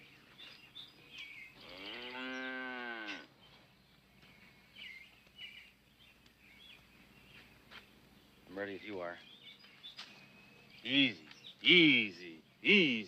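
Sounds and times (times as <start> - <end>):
birds chirping faintly: 0.0 - 13.0
cow mooing: 1.6 - 3.3.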